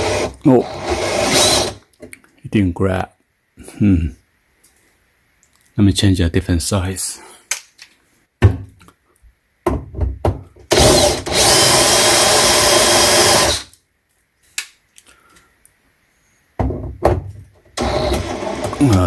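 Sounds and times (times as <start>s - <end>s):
power drill running: 0.0s - 1.8s, 10.7s - 13.7s, 17.8s - 19.0s.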